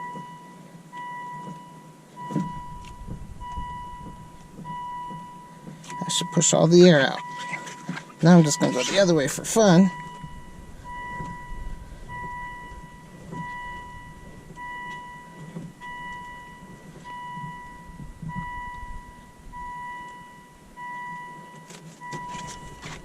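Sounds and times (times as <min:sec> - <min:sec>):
car warning chime: 0:00.0 - 0:23.0.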